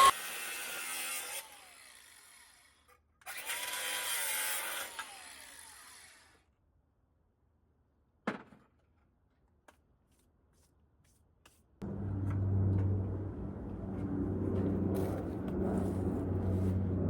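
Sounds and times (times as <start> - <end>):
low mechanical hum: 11.8 - 17.0.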